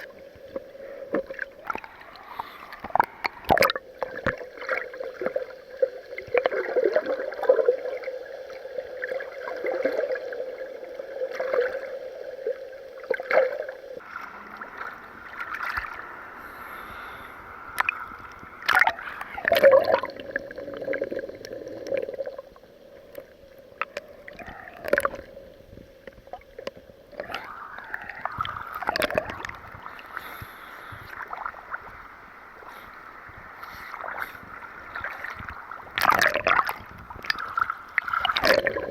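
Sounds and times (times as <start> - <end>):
water sloshing and gurgling: 0.0 - 38.9.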